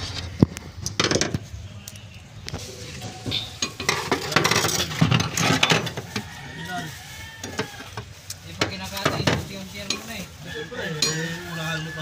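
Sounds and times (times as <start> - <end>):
metal tools clinking: 3.3 - 6.0, 11.0 - 11.4.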